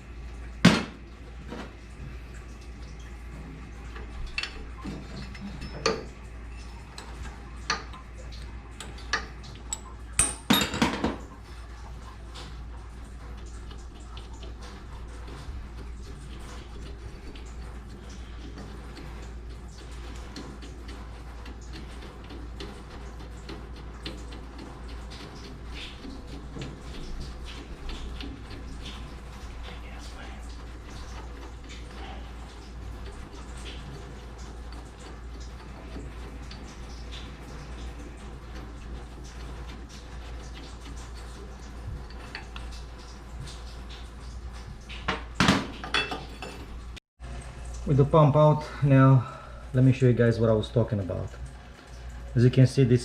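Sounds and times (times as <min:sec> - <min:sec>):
hand tools knocking on metal: 0:08.8 - 0:11.2.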